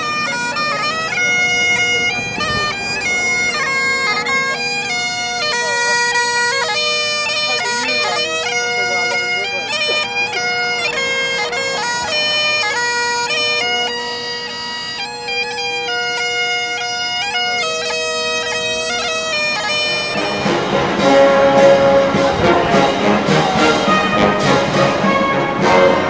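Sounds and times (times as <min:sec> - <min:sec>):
bagpipes playing: 0:00.0 - 0:26.0
band with brass and beat: 0:20.0 - 0:26.0.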